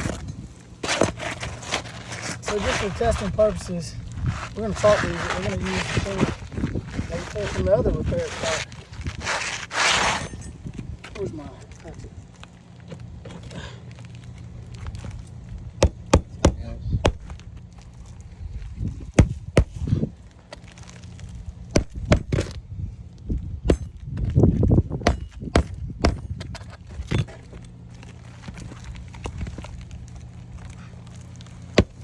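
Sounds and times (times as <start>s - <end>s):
metal tool knocking on shingles: 15.8s - 17.4s, 21.8s - 22.5s, 23.7s - 24.0s, 25.0s - 27.2s, 31.8s - 32.0s.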